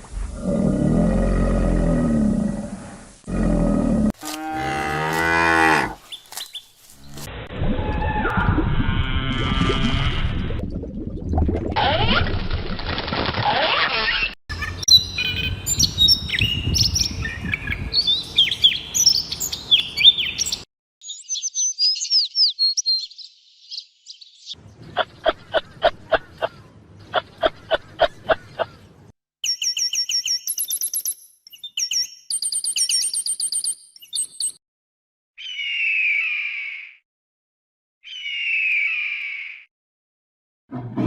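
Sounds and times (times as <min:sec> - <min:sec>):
songbirds chirping: 0:14.6 - 0:34.5
high bird trills: 0:38.1 - 0:39.7.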